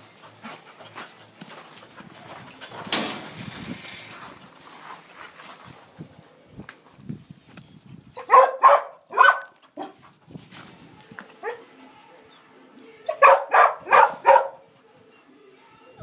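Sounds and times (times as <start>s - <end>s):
dog barking: 8.2s - 10.0s, 13.1s - 14.7s.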